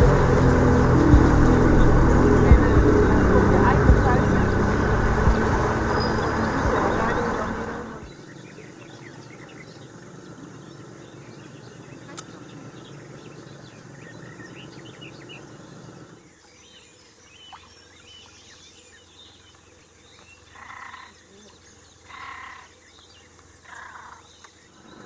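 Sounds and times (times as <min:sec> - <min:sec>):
low steady rumble: 0:00.0 - 0:08.1
birds singing and calling: 0:00.0 - 0:25.0.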